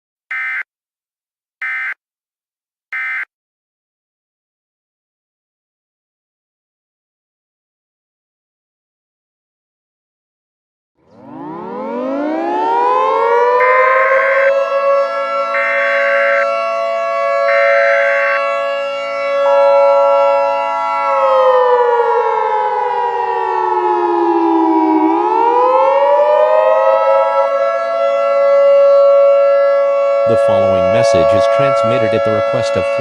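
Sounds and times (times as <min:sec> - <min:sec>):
warning siren wailing: 0:11.0 - 0:33.0.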